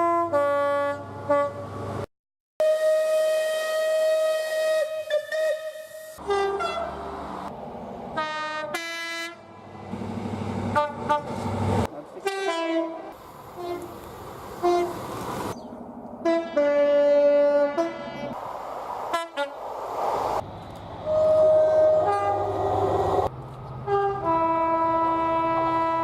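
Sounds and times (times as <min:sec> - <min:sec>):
two-tone train horn blasts: 0:00.0 - 0:01.6, 0:02.6 - 0:07.0, 0:08.2 - 0:09.8, 0:10.7 - 0:11.3, 0:12.2 - 0:13.9, 0:14.6 - 0:15.0, 0:16.2 - 0:18.4, 0:21.1 - 0:22.8, 0:23.8 - 0:26.0
train rumble: 0:13.2 - 0:26.0.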